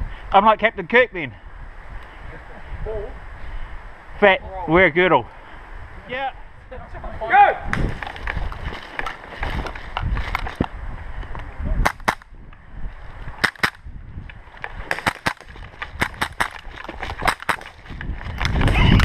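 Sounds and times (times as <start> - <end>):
airsoft gun shots: 11.8 - 12.3, 13.4 - 13.8, 14.9 - 16.6, 17.2 - 17.8.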